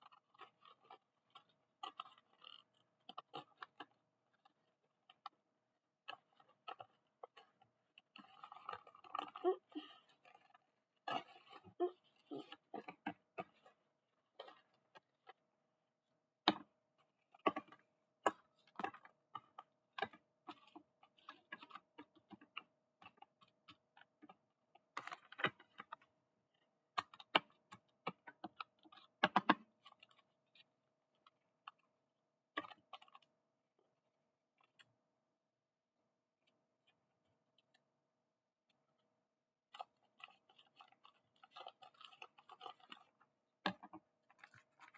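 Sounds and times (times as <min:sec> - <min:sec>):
clicks and taps of handled items: 0:16.4 - 0:26.1, 0:26.9 - 0:31.9, 0:32.5 - 0:33.3, 0:39.7 - 0:44.9.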